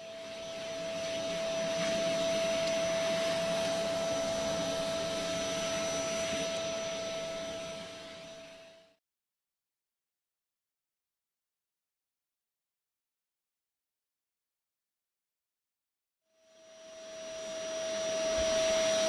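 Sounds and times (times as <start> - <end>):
vacuum cleaner whining: 0.0 - 9.0, 16.4 - 19.0.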